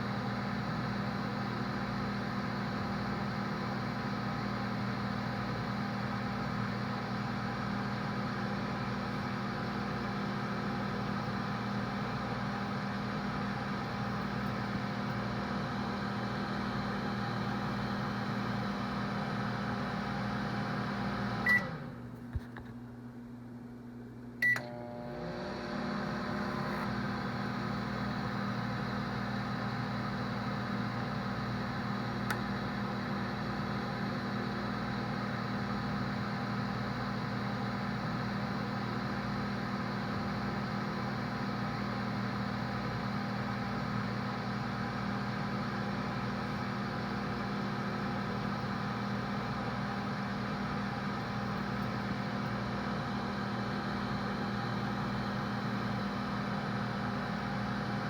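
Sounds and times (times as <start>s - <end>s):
microwave hum and fan whir: 0.0s - 58.0s
microwave beep: 20.7s - 22.0s, 24.4s - 25.2s.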